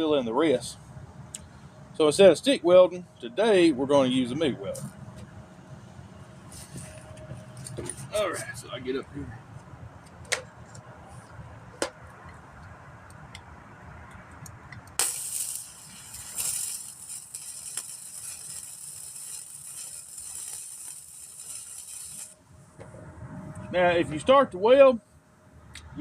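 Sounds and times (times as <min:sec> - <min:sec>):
welder arc crackling hiss: 0:15.0 - 0:22.4.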